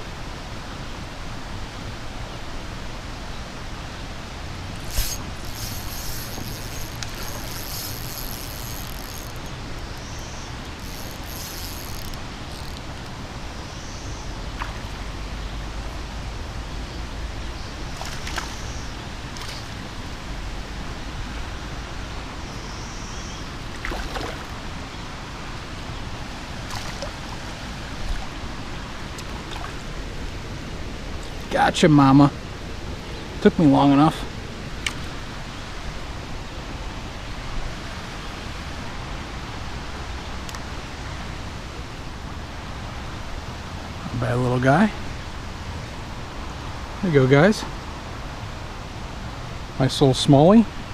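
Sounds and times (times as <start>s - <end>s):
creek water rushing: 0.0s - 50.9s
faint scrapes and clicks: 4.8s - 12.8s.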